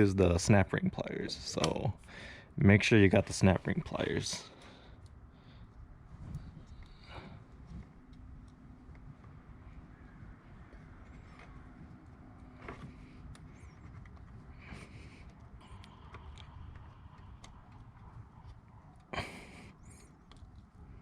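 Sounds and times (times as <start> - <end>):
faint handling noise: 2.7 - 19.1.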